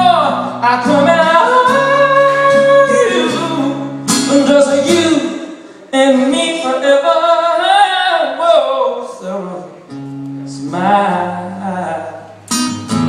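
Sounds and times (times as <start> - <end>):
person singing wordless line: 0.0 - 9.9
acoustic guitar: 0.0 - 13.0.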